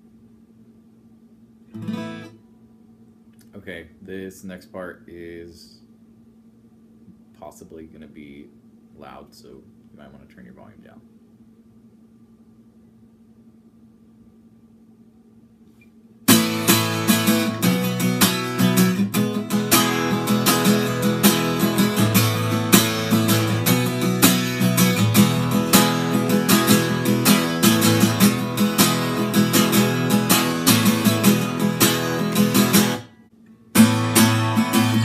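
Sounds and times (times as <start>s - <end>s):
acoustic guitar strummed hard: 1.7s - 2.4s, 16.3s - 35.0s.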